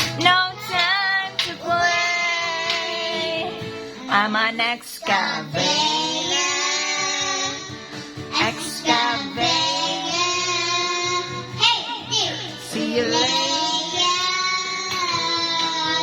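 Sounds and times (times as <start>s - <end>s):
backing music: 0.0s - 16.0s
child singing held notes: 5.0s - 7.7s, 8.3s - 16.0s.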